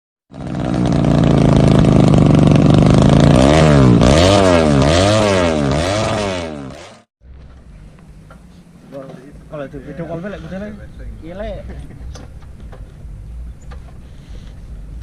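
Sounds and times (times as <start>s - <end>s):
motorcycle engine revving: 0.3s - 7.4s.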